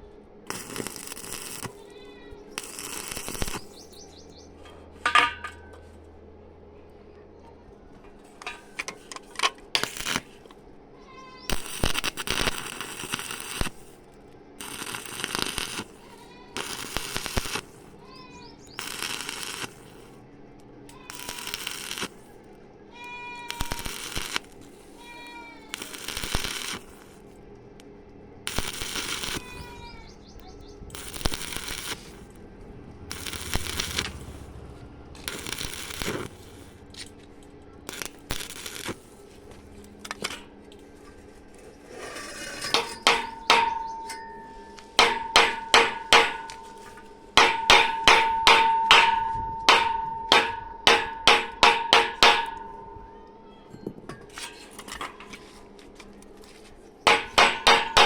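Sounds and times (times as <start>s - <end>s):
arc welding bursts: 0.5s - 4.2s, 9.8s - 10.4s, 11.3s - 20.2s, 20.9s - 22.5s, 23.4s - 27.3s, 28.5s - 32.4s, 33.0s - 37.2s, 37.8s - 39.4s, 42.8s - 44.0s, 44.8s - 52.6s, 57.1s - 58.0s
hammer blows on ringing metal: 42.6s - 54.3s, 57.1s - 58.0s.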